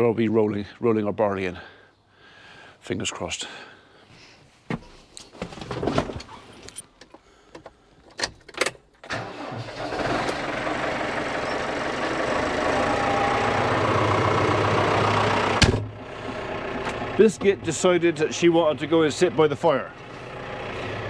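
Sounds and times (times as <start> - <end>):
tractor engine starting and idling: 8.6 - 21.0.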